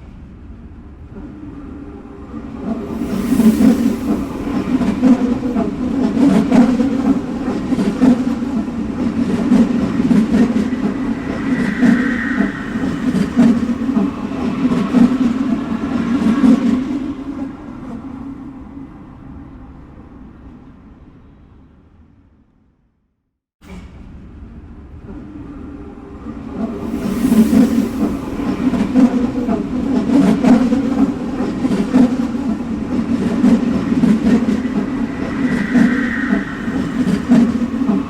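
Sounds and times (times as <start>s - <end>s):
subway train rumble: 0.0s - 22.3s, 23.6s - 38.0s
high wheel squeal: 10.0s - 15.0s, 34.3s - 38.0s.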